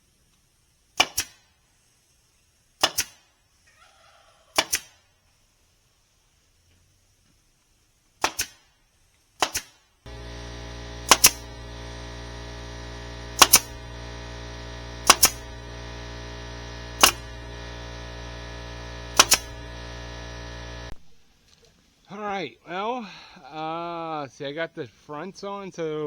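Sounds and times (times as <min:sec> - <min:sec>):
nail gun firing: 0:02.8 - 0:03.2, 0:08.2 - 0:08.6, 0:09.4 - 0:21.0
steady machine hum: 0:10.1 - 0:21.1.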